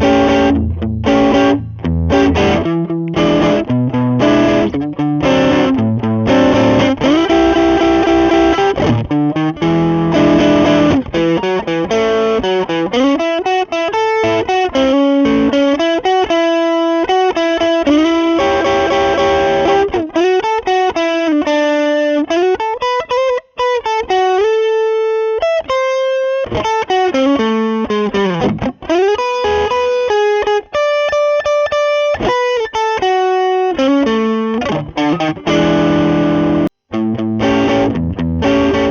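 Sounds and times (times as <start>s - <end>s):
overdriven electric guitar: 0.0s - 38.9s.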